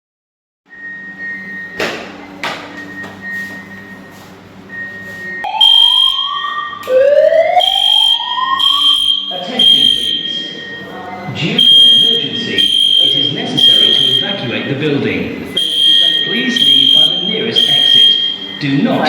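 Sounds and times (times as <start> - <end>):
on-off high beeping tone: 0.7 - 19.0
steady high-pitched tone: 0.7 - 19.0
alarm rising whoop tone: 4.7 - 14.7.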